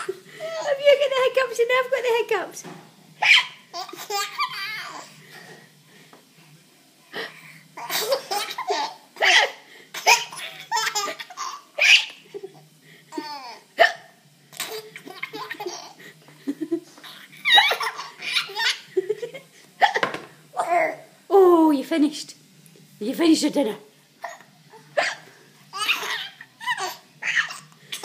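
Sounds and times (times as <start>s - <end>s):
child hiccuping: 13.8s - 14.1s.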